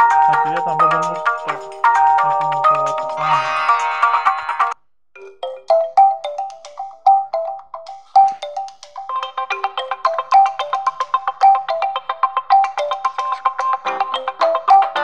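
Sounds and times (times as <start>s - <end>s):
phone ringtone melody: 0.0s - 15.0s.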